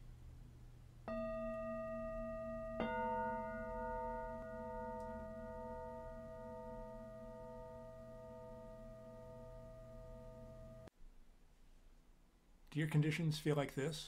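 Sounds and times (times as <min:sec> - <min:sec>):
bell-like metallic strikes: 0:01.1 - 0:10.9.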